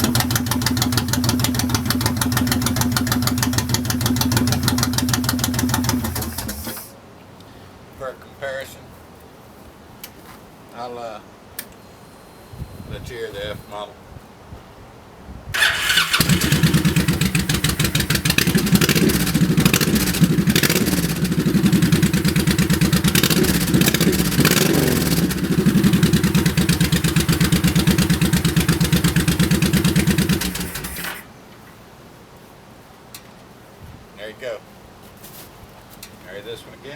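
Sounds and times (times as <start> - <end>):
motorcycle engine starting and revving: 0.0 - 6.9, 15.6 - 31.3.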